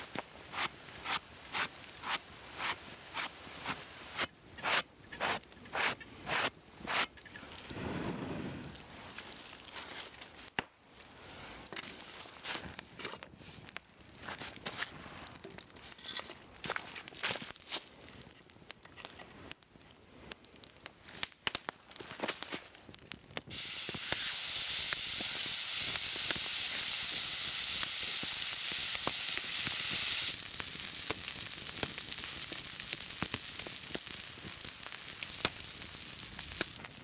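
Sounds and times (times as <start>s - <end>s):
food sizzling on hot stone: 0.0s - 8.5s, 23.5s - 37.0s
fire crackling: 0.0s - 37.0s.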